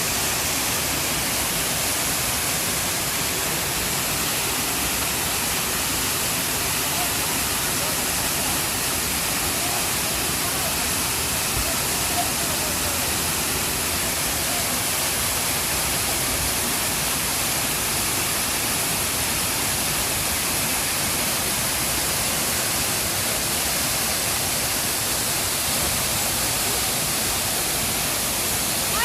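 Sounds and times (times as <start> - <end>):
waterfall crashing over rocks: 0.0 - 29.0.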